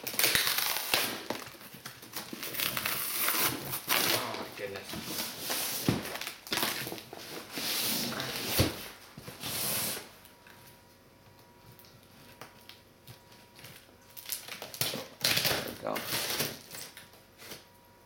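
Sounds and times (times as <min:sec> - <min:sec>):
taped package rustling open: 0:00.0 - 0:07.4, 0:13.6 - 0:17.6.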